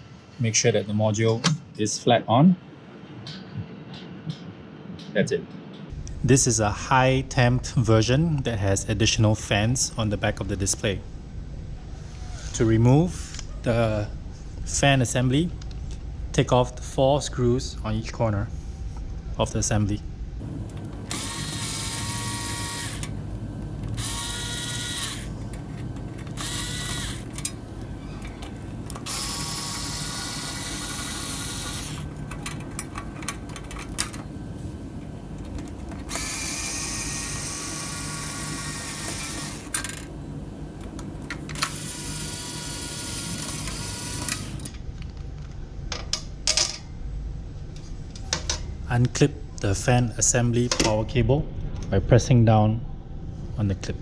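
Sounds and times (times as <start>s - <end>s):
power screwdriver motor whining: 20.4s - 40.1s, 40.8s - 44.7s.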